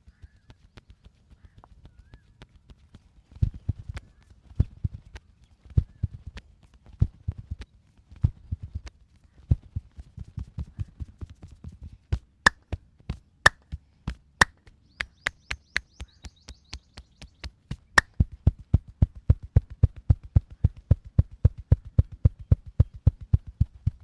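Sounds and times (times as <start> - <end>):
hands striking body rhythmically: 15.0 - 18.1.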